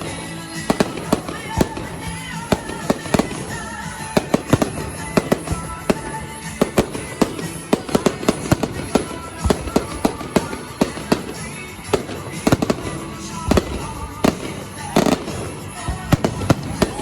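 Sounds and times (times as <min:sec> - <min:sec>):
fireworks bangs: 0:00.0 - 0:17.0
music: 0:00.0 - 0:17.0.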